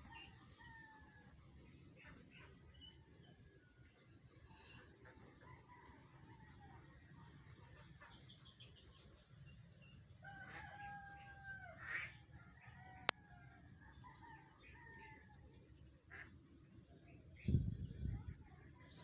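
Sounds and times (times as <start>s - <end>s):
rooster crowing: 10.2s - 15.3s.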